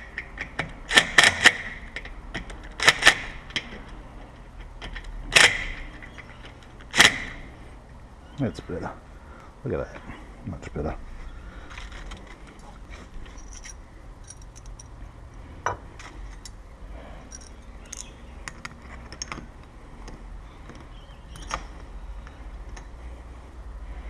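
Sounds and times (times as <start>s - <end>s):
keys clinking: 11.8s - 15.0s, 17.2s - 18.2s.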